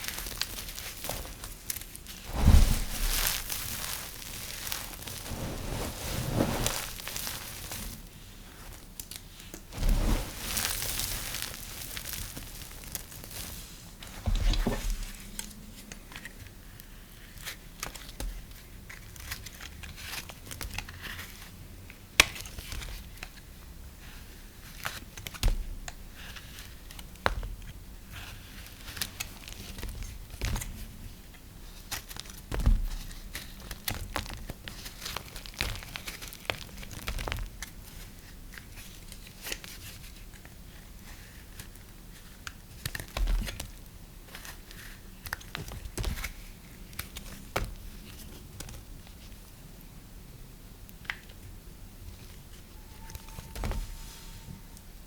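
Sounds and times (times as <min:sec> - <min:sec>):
soap crackling and crunching: 0:00.0 - 0:08.1, 0:09.0 - 0:13.8
soft thuds: 0:02.3 - 0:08.0.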